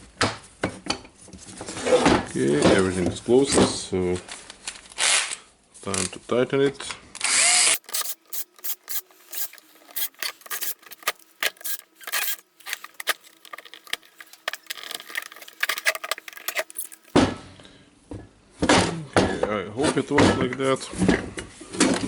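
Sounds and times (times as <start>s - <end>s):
screwdriver clicks and scrapes: 7.3s - 17.2s.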